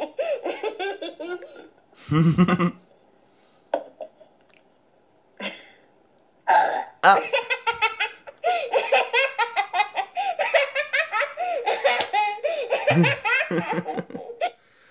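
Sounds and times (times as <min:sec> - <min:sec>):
girl laughing: 0:07.0 - 0:14.5.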